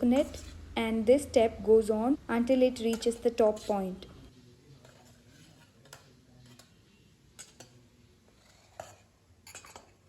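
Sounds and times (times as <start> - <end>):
spoon tapping metal pot: 2.5 - 4.1, 7.4 - 7.8, 8.8 - 10.0.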